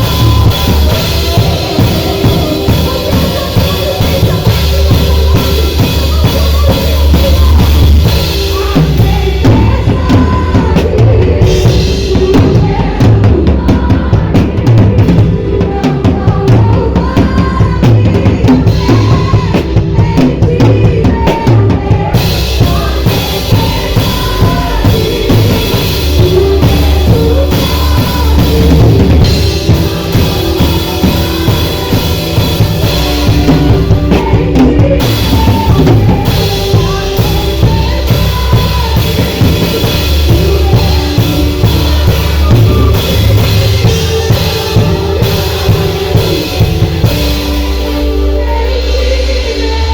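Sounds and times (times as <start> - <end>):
drum kit beat: 0.0 - 49.9.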